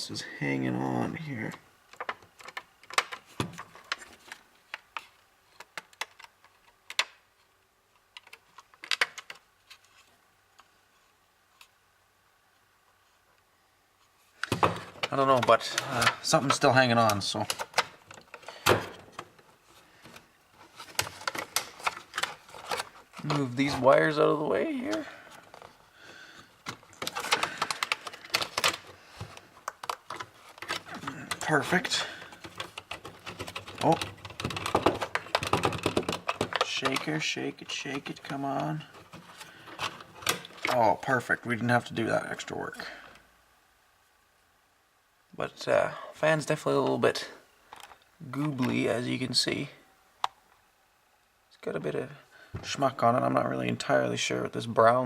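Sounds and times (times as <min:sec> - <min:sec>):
wires and parts rattling: 0:00.0 - 0:10.7, 0:14.4 - 0:43.0, 0:47.7 - 0:49.1
plastic and metal parts clicking: 0:01.9 - 0:07.2, 0:08.0 - 0:09.8, 0:26.6 - 0:37.1.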